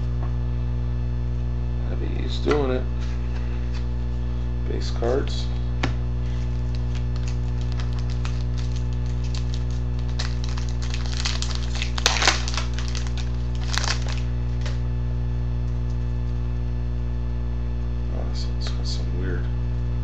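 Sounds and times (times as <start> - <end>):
electrical hum: 0.0 - 20.0
cards rustling: 6.2 - 14.8
wrapper crinkling and tearing: 6.3 - 14.8.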